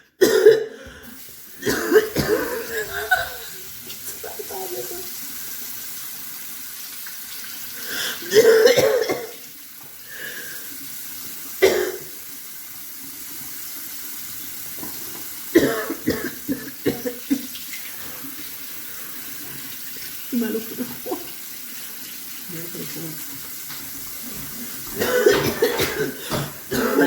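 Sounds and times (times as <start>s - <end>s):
woman coughing: 0.2s - 0.8s, 1.6s - 3.6s, 8.3s - 9.3s, 11.6s - 12.0s, 15.6s - 17.4s, 25.0s - 27.0s.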